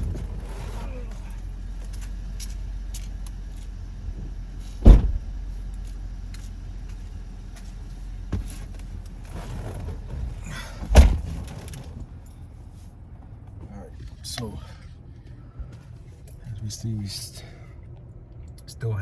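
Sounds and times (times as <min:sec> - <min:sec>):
steady low rumble: 0:00.0 - 0:19.0
car trunk lid slamming: 0:04.8 - 0:05.4, 0:10.8 - 0:11.4
car door slamming: 0:04.8 - 0:05.5, 0:10.7 - 0:11.5.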